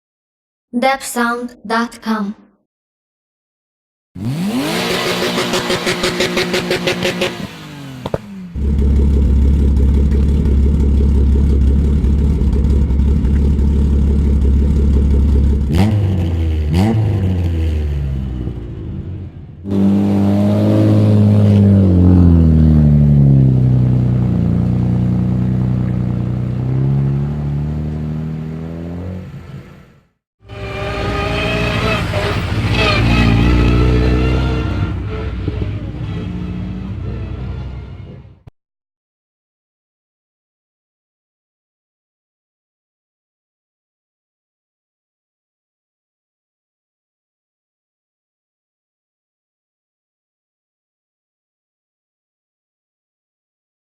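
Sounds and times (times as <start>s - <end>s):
rally car engine revving: 4.2s - 29.9s, 30.5s - 38.4s
engine low rumble: 7.2s - 38.5s.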